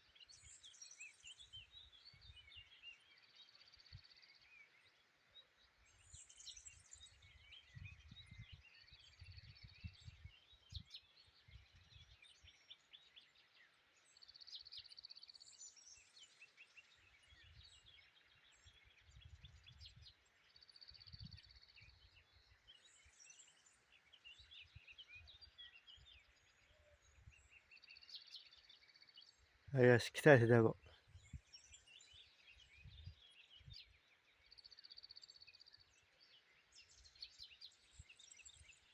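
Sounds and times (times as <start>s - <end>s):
songbird chirping and trilling: 0.0s - 38.9s.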